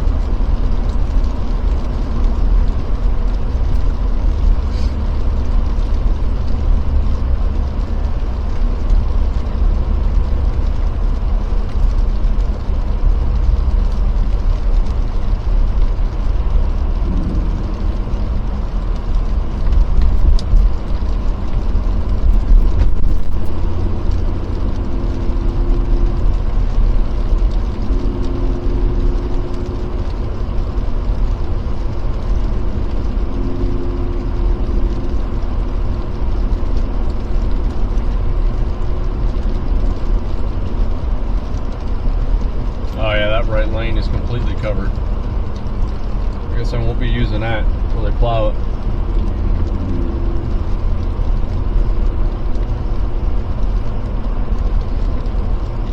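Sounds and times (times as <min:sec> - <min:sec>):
engine and tyres rumbling: 0:00.0 - 0:55.9
faint humming tone: 0:16.7 - 0:30.6.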